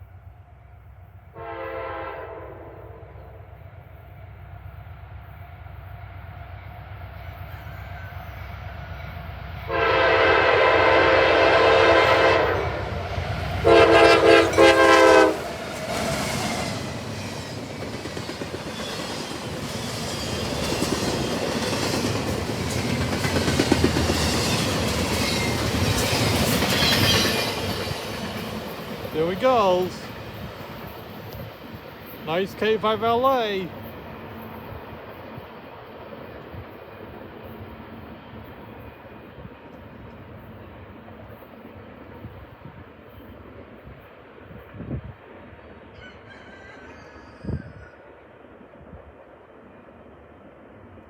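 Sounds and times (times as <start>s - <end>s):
train air horn blasts: 1.3s - 3.2s, 9.7s - 12.8s, 13.6s - 15.4s
freight train wheels clattering: 14.2s - 35.2s.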